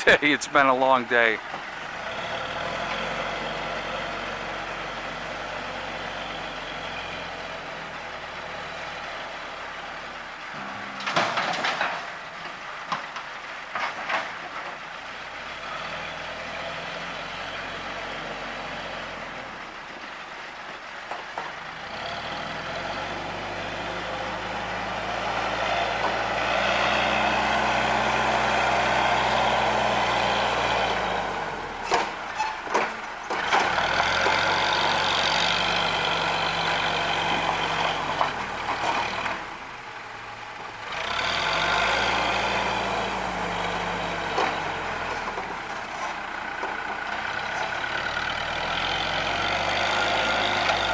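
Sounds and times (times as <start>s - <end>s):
diesel engine revving: 1.2s - 9.8s, 21.7s - 50.9s.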